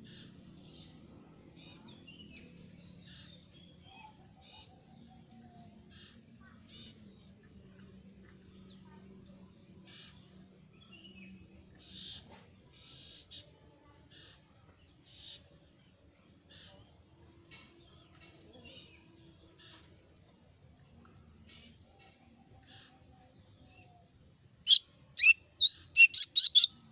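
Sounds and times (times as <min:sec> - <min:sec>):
bird giving scratchy chirps: 0:24.7 - 0:26.8.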